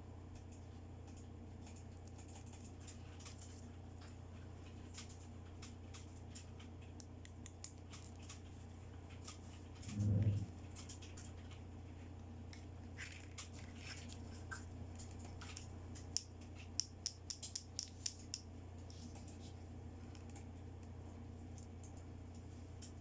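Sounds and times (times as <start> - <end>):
steady low hum: 0.0 - 23.0
plastic scraping and rustling: 12.8 - 14.6
sharp plastic clicks: 15.0 - 19.4.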